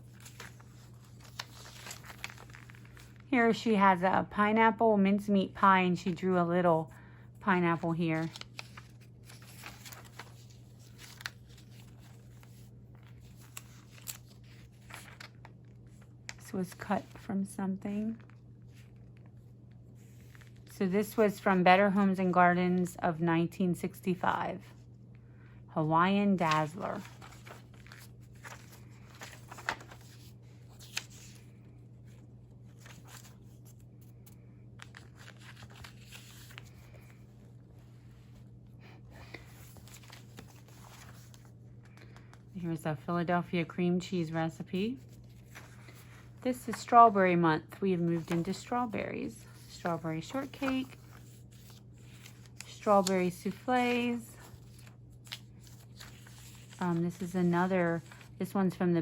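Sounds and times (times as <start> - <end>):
paper pages rustling: 0.0 - 3.3, 7.7 - 17.3, 18.0 - 21.6, 26.4 - 42.5, 44.8 - 47.2, 48.0 - 58.6
low steady hum: 0.0 - 59.0.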